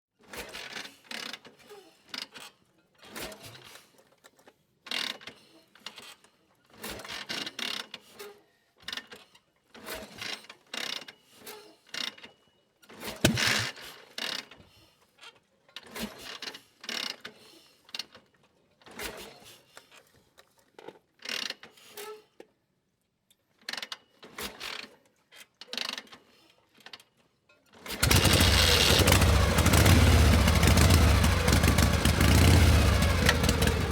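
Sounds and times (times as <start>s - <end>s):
loud steady engine: 27.9s - 33.9s.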